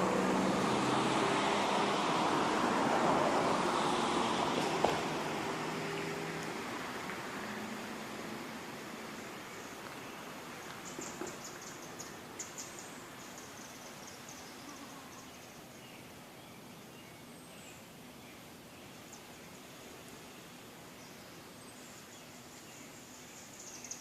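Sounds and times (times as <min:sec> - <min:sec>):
steady outdoor hiss: 0:00.0 - 0:24.0
small birds chirping: 0:09.1 - 0:24.0.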